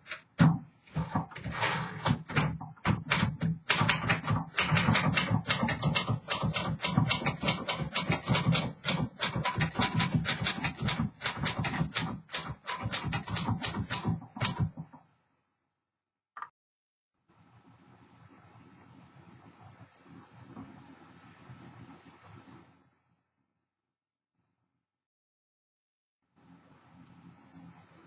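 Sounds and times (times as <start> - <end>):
manual typewriter keystrikes: 2.0 - 14.8.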